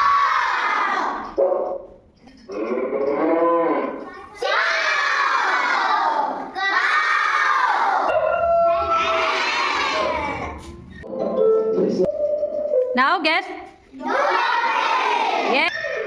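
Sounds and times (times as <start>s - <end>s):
children shouting: 0.0s - 1.4s, 4.1s - 10.8s, 14.0s - 16.0s.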